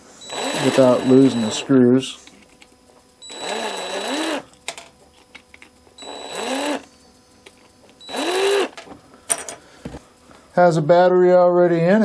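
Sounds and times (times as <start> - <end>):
electric screwdriver motor whirring: 0.2 - 1.8, 3.2 - 4.6, 6.0 - 6.9, 7.9 - 8.8.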